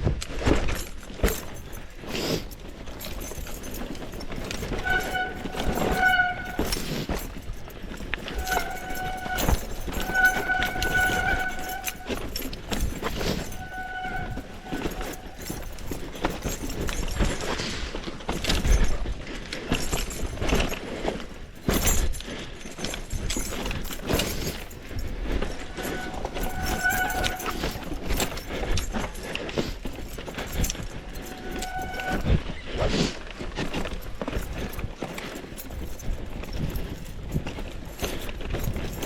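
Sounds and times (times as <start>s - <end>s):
mountain bike rattling on trail: 0.0s - 39.0s
brief high squeals: 31.2s - 32.4s.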